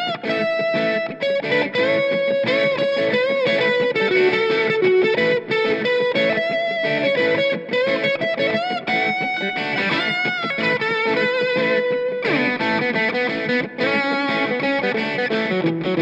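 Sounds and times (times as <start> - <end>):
electric guitar lead line: 0.0 - 16.0.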